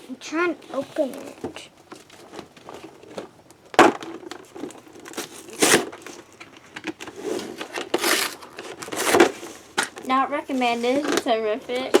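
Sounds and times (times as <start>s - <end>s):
packaging crinkling: 1.0s - 12.0s
cardboard tearing: 2.0s - 12.0s.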